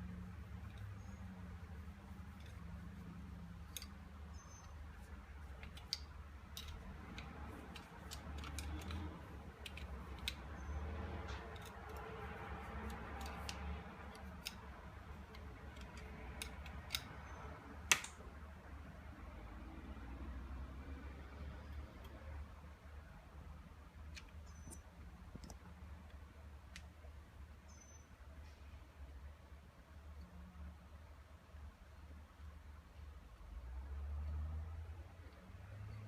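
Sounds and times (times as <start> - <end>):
low steady hum: 0.0 - 36.0
small metal parts clicking: 0.5 - 18.1.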